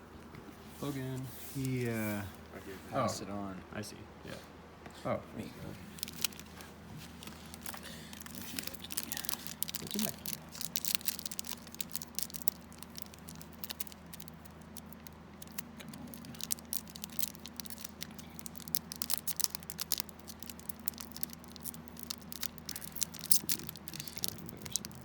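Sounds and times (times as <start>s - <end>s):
steady low hum: 0.0s - 25.0s
foil wrapper crinkling: 5.8s - 25.0s.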